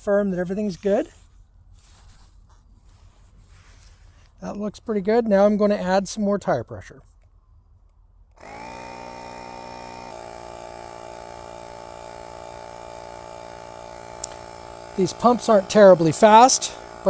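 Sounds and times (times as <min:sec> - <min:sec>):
electric tire pump humming: 0:08.3 - 0:17.0.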